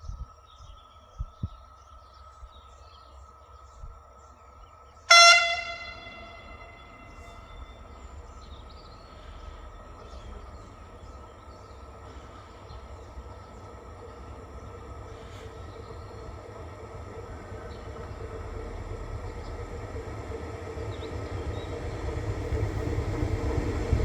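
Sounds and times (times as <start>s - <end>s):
train running noise: 2.0s - 24.0s
train horn blast: 5.1s - 11.2s.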